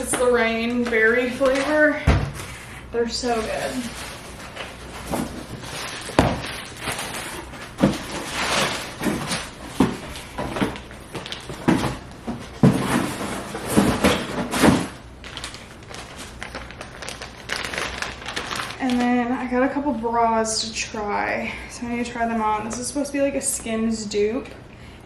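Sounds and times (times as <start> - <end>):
knocks and thumps of packages: 0.0 - 2.6, 3.4 - 15.5
cardboard and plastic rustling: 0.0 - 19.3.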